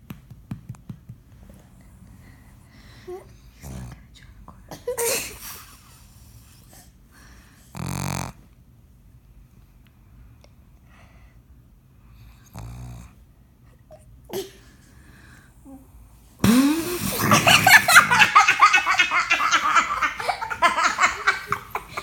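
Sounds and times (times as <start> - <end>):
dog snoring snort: 3.4 - 4.2, 7.7 - 8.5, 12.2 - 13.2
person laughing loudly: 16.8 - 22.0.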